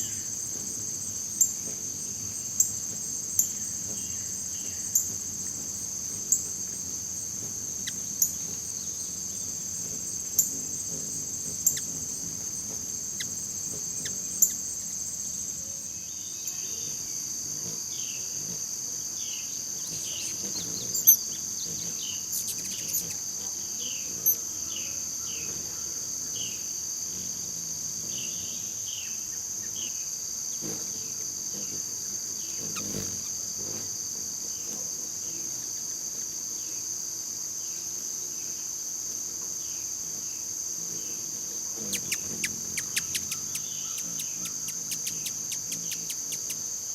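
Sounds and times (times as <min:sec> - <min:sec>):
insects chorus: 0:00.0 - 0:46.9
bird chirping: 0:19.8 - 0:23.2, 0:41.8 - 0:46.6.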